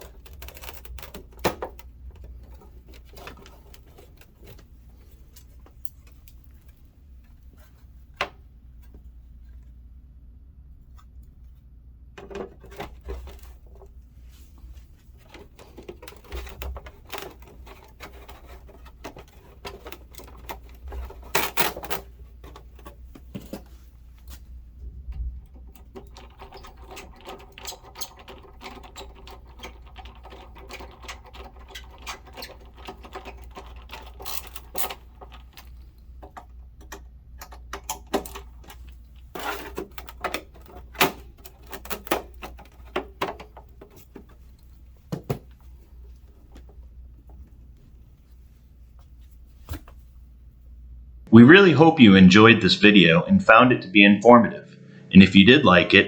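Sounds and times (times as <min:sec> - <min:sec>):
plastic panels clicking and knocking: 0:00.0 - 0:04.7, 0:12.2 - 0:13.9, 0:15.2 - 0:23.7, 0:25.1 - 0:45.8
faint steady hum: 0:00.0 - 0:56.0.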